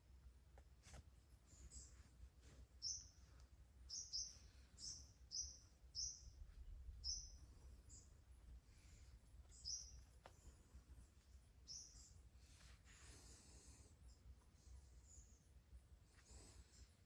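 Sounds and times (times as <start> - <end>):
small bird chirping: 1.4 - 15.5.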